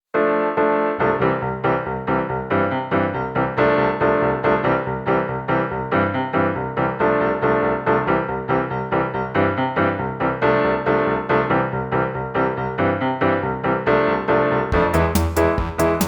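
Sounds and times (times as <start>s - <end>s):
keyboard tune with steady beat: 14.7s - 16.0s.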